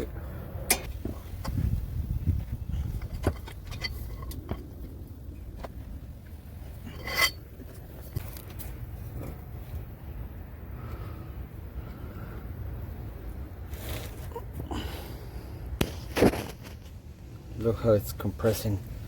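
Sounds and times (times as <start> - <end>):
low steady rumble: 0.0 - 19.0
rattling scrape: 2.8 - 4.9, 6.7 - 8.4.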